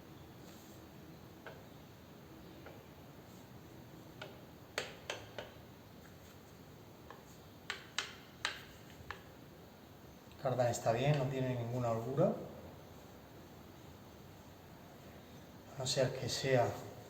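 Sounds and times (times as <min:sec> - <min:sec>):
metal clicks and taps: 0:07.1 - 0:09.3.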